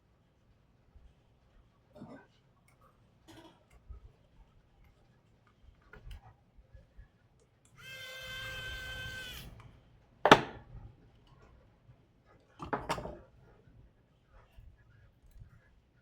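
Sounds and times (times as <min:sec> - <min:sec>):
knocks: 0:10.3 - 0:10.6.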